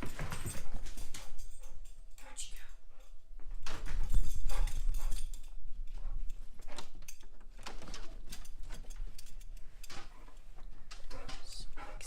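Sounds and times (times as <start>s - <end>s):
taps and rustles: 3.4s - 12.0s.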